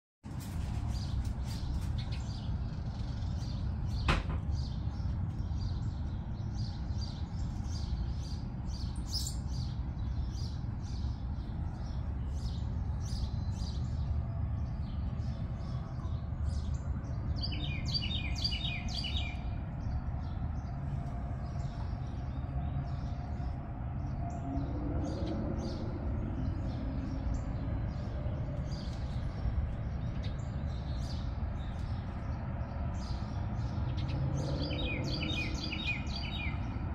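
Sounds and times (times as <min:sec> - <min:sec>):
songbirds chirping: 0:00.2 - 0:36.9
bird trill: 0:17.4 - 0:19.4, 0:34.0 - 0:36.6
low rumble: 0:19.4 - 0:35.8.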